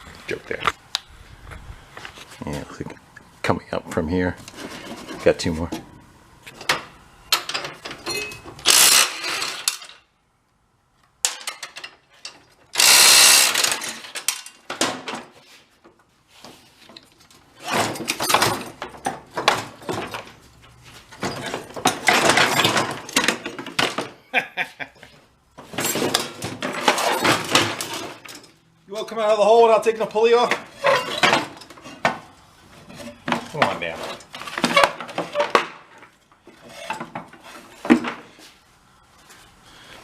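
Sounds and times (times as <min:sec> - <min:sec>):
metal clanks of tools: 0:06.5 - 0:10.0, 0:11.2 - 0:15.2, 0:16.9 - 0:20.3, 0:21.1 - 0:24.2, 0:25.6 - 0:28.6, 0:30.5 - 0:32.2
ratchet wrench clicking: 0:12.8 - 0:13.6.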